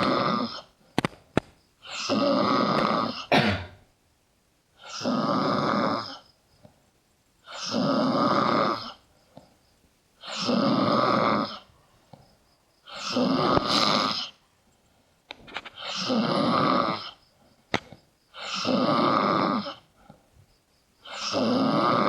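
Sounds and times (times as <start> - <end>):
person snoring loudly: 0.0 - 0.7, 1.8 - 3.4, 4.8 - 6.2, 7.5 - 9.0, 10.2 - 11.7, 12.8 - 14.4, 15.8 - 17.2, 18.3 - 19.9, 21.0 - 22.0.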